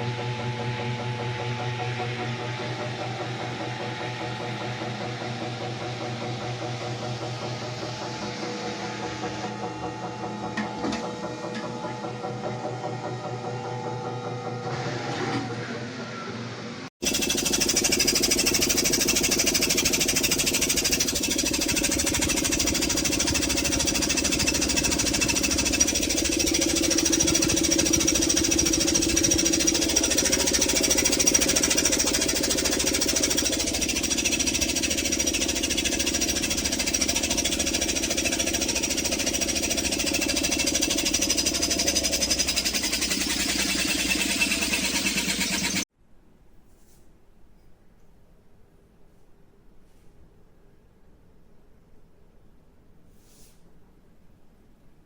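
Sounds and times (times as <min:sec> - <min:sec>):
washing machine running: 0:00.0 - 0:45.9.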